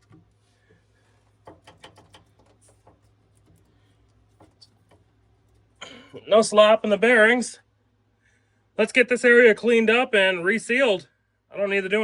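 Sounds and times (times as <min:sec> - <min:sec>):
low steady hum: 0:00.0 - 0:12.0
faint clicks and light knocks: 0:01.4 - 0:05.8.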